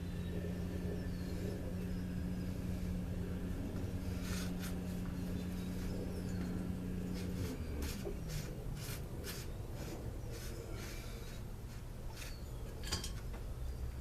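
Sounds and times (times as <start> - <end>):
motor hum winding down: 0.0 - 10.2.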